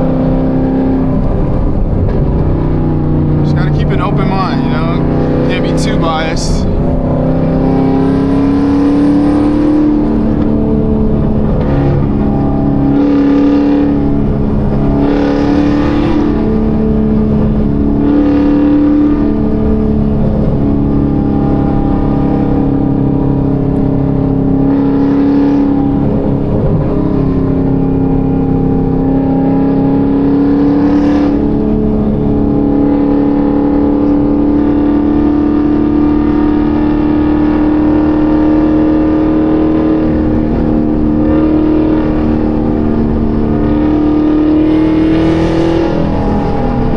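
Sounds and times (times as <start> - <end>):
wind noise: 0.0 - 34.7
car engine accelerating: 0.0 - 46.9.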